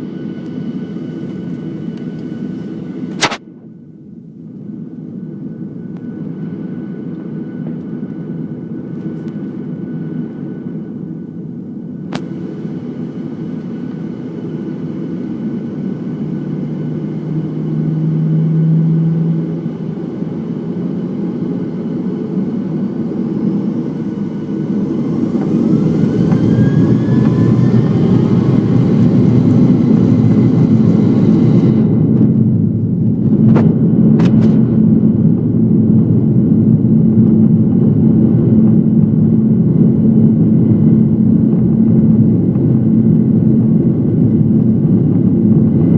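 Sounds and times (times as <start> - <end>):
jet engines whining and rumbling: 0.0 - 45.9.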